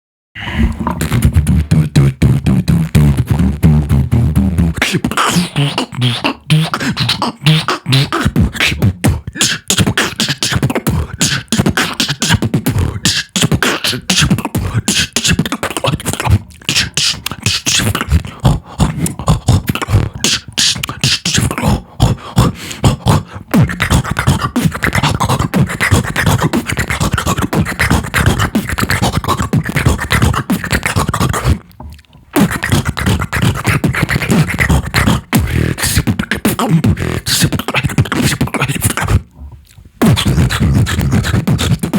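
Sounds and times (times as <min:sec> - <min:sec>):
beatboxing: 0:00.4 - 0:41.9.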